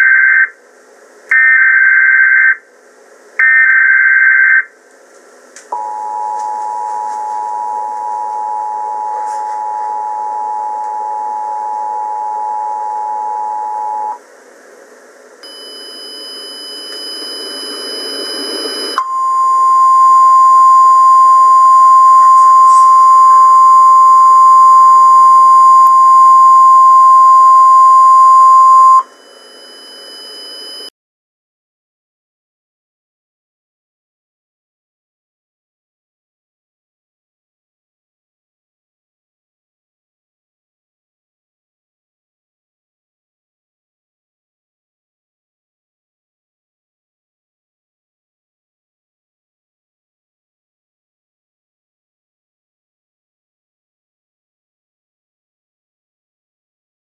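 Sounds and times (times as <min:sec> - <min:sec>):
digital data tone bursts: 0:15.4 - 0:19.8
loud steady alert tone: 0:15.4 - 0:30.9
two-tone attention signal: 0:15.4 - 0:30.9.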